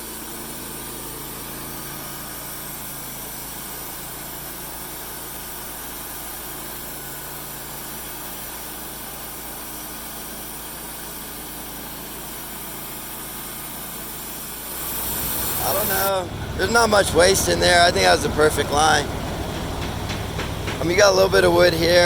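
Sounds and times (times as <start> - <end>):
engine idling: 0.0 - 22.0
constant hiss: 14.7 - 22.0.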